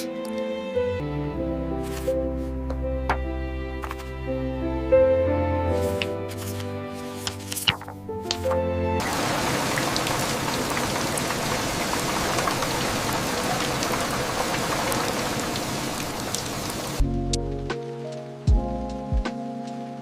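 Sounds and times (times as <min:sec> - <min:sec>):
music: 0:00.0 - 0:09.1, 0:17.0 - 0:20.0
steady rain hiss: 0:09.0 - 0:17.0.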